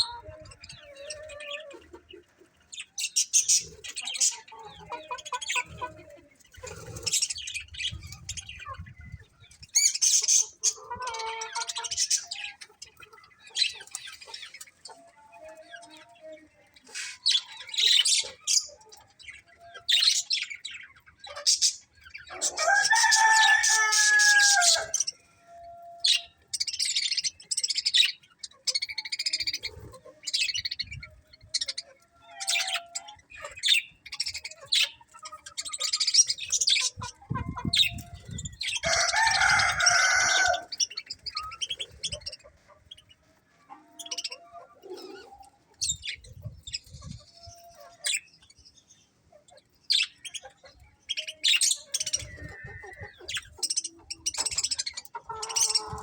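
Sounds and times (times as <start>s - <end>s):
budgerigars chirping and chattering: 0.0s - 56.0s
rooster crowing: 22.5s - 25.0s, 38.8s - 40.7s.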